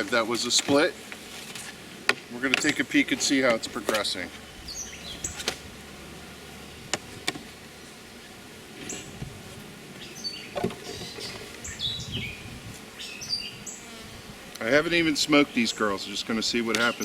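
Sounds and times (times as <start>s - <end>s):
honey bees humming: 0.0s - 17.0s
birds chirping: 2.3s - 17.0s
wood and metal knocks and scraping: 10.5s - 11.6s.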